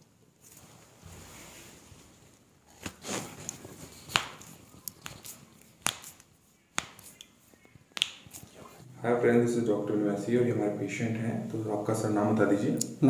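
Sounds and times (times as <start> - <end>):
sharp clicks of body manipulation: 2.8 - 8.5.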